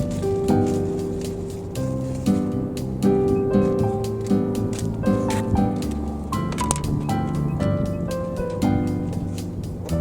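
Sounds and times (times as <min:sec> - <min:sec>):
music with plucked melody: 0:00.0 - 0:10.0.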